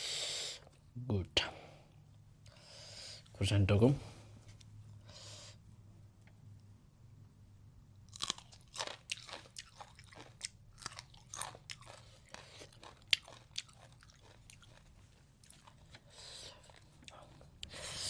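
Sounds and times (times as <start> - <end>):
crunching and chewing pepper: 8.1 - 18.0.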